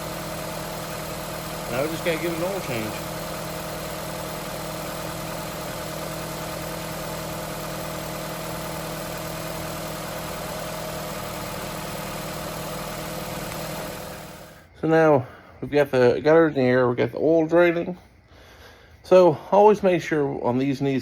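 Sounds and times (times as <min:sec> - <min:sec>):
car engine idling: 0:00.0 - 0:14.7.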